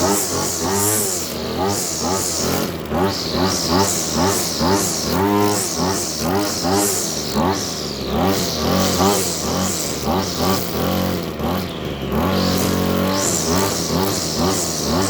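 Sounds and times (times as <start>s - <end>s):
string trimmer engine revving: 0.0s - 15.0s.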